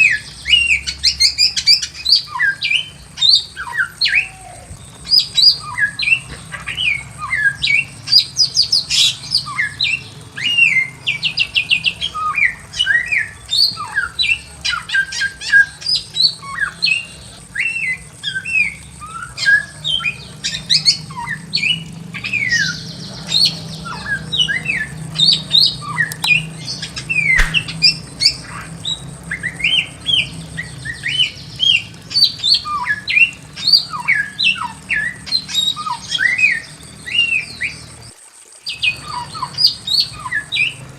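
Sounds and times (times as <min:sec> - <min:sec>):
bird singing sliding whistles: 0:27.1 - 0:28.4.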